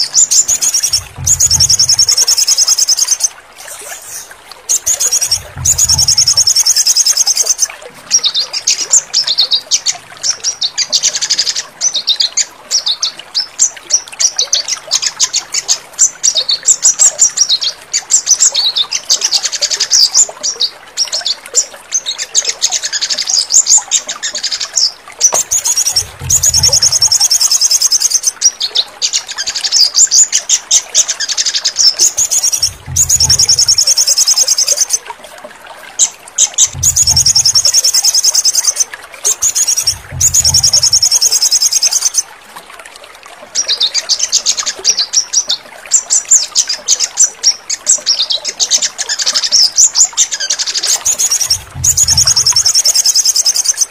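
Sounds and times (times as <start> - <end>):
bird chattering trills: 0.1 - 7.7, 25.4 - 28.2, 32.1 - 35.0, 36.6 - 42.2, 51.0 - 53.7
low deep sounds: 0.8 - 2.2, 5.2 - 6.6, 25.9 - 27.1, 32.6 - 33.9, 36.6 - 37.8, 39.8 - 41.0, 51.4 - 52.6.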